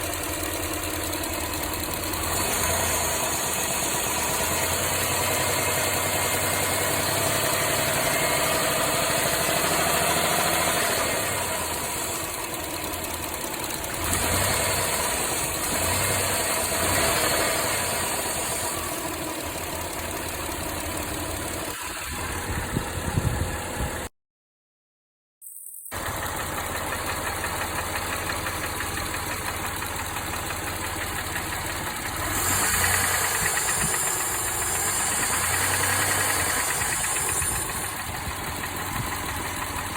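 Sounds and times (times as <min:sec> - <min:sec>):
car engine running: 0:00.0 - 0:24.1, 0:25.9 - 0:39.9
engine knocking: 0:00.0 - 0:24.1, 0:25.9 - 0:39.9.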